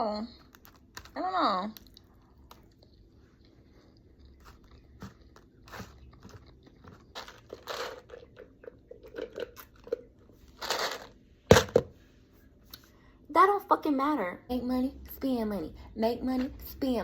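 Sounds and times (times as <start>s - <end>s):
person chewing food up close: 0.4s - 10.9s
crunchy bites: 4.2s - 8.4s.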